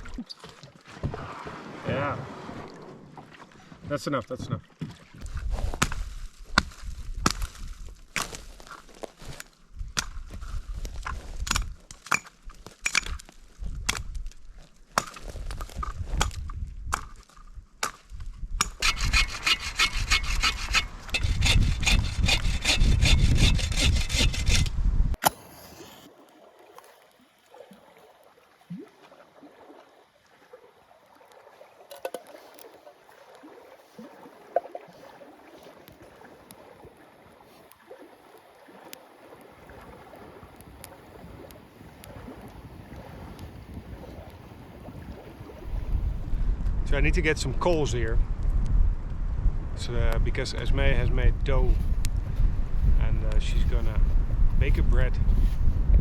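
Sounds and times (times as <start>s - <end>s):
saw cutting firewood: 18.6s - 26.1s.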